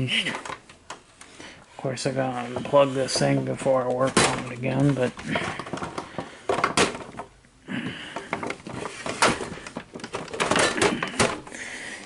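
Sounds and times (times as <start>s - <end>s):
handling clicks and knocks: 2.2s - 11.6s.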